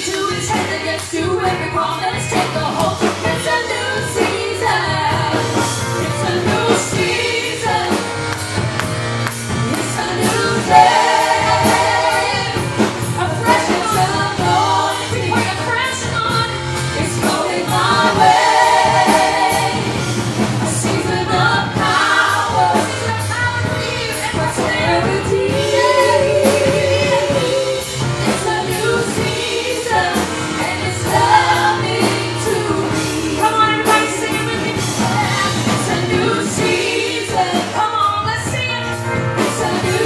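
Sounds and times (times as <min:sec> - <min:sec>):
band playing a steady beat: 0:00.0 - 0:40.0
voices singing gospel music: 0:00.0 - 0:40.0.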